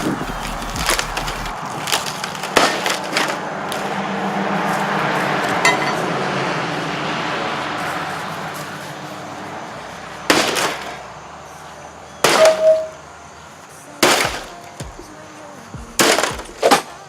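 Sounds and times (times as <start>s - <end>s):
noisy rush: 0.0s - 17.0s
tv screen smashed with blows: 1.7s - 3.4s, 10.3s - 11.0s, 12.2s - 12.7s, 14.0s - 14.6s, 16.0s - 16.9s.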